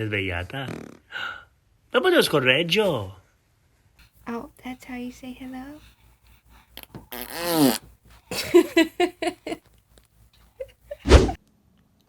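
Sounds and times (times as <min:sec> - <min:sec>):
baby farting: 0:00.7 - 0:01.0, 0:07.1 - 0:07.9
laughter: 0:08.3 - 0:09.6.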